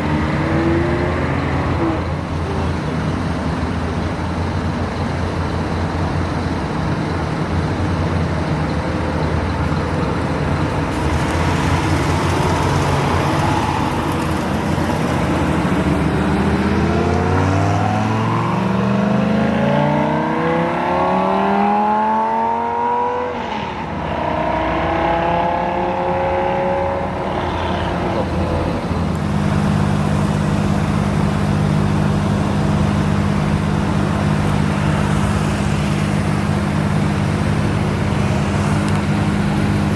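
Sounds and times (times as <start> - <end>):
car engine humming at low revs: 0.0 - 39.9
sports car engine accelerating: 9.4 - 39.9.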